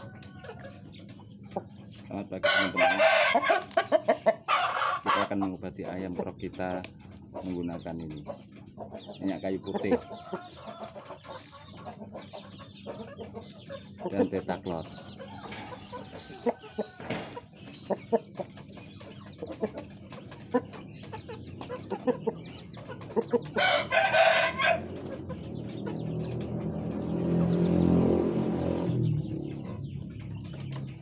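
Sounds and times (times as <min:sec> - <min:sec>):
chickens clucking: 0:00.0 - 0:31.0
rooster crowing: 0:02.5 - 0:03.5, 0:23.6 - 0:24.9.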